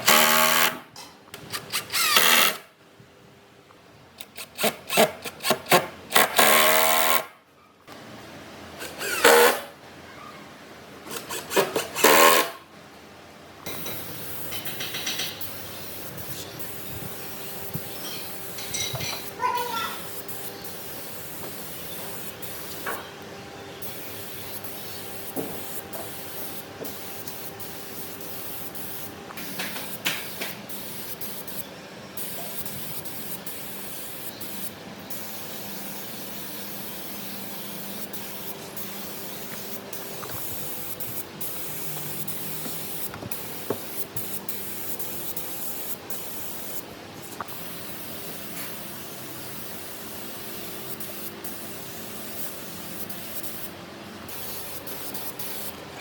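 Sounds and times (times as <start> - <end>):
compressed air gun hissing: 13.6 - 23.1, 23.8 - 55.8.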